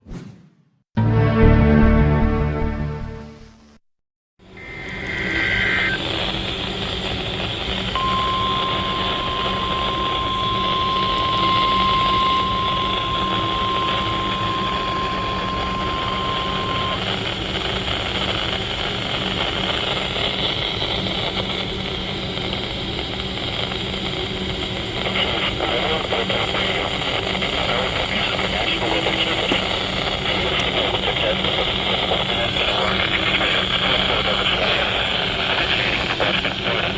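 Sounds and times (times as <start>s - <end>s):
steady alarm tone: 4.4s - 18.7s
low steady hum: 4.5s - 25.9s
radio static hiss: 4.5s - 36.9s.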